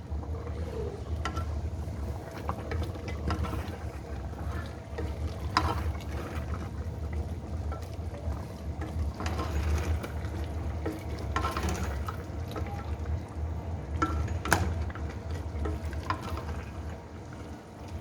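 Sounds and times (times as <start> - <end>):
wet stirring: 1.2 - 13.0.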